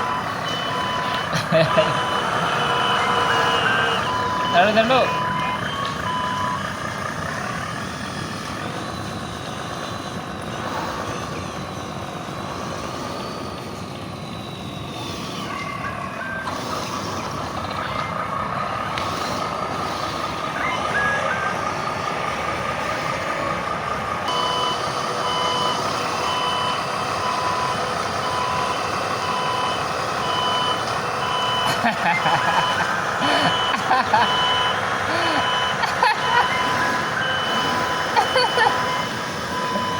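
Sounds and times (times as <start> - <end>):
reversing alarm beeping: 0.0 - 39.9
truck engines running under load: 0.0 - 39.9.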